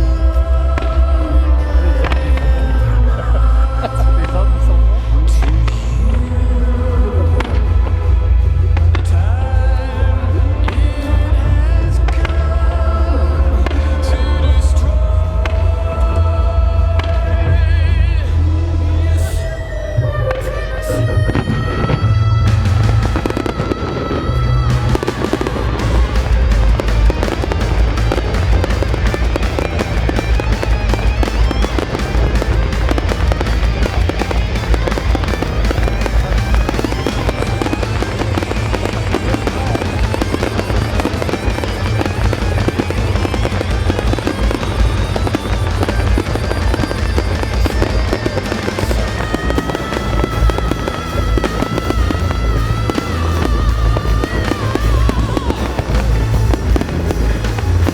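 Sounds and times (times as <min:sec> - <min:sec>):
fireworks bangs and crackling: 0:00.0 - 0:18.4, 0:21.2 - 0:57.9
music: 0:00.0 - 0:57.9.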